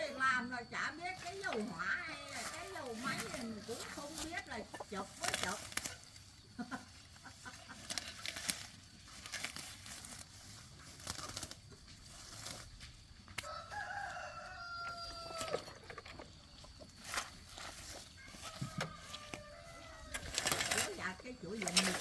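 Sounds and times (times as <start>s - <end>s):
rooster crowing: 13.4s - 15.8s, 18.0s - 21.1s.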